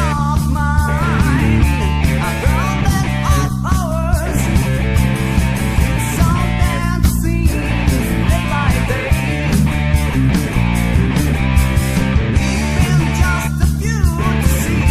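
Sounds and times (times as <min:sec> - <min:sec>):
bass: 0:00.0 - 0:14.9
distorted electric guitars: 0:00.0 - 0:14.9
drums with steady beat: 0:00.0 - 0:14.9
wavering lead line: 0:00.9 - 0:02.9.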